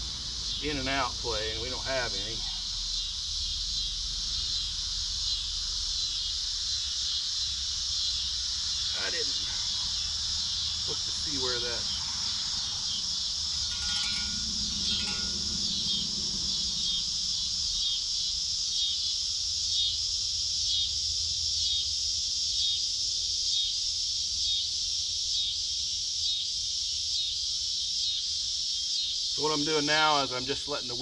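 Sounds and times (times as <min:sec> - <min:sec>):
insects chirring: 0:00.0 - 0:31.0.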